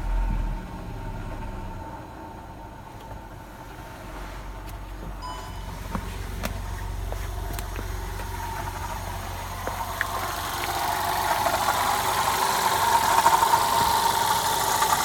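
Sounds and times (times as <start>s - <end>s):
car engine humming: 0.0s - 15.0s
thin high tone: 5.2s - 5.9s.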